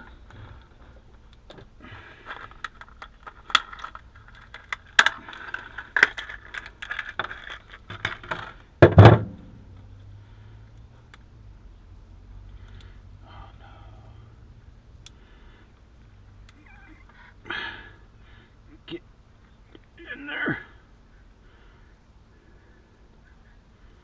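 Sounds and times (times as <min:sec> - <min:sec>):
connectors clicking and rattling: 0:00.0 - 0:11.3
loud thump: 0:08.8 - 0:09.7.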